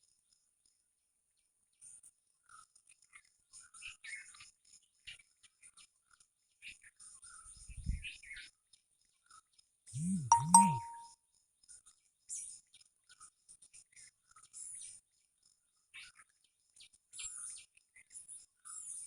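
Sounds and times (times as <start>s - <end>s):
ding-like ring: 10.0s - 11.1s.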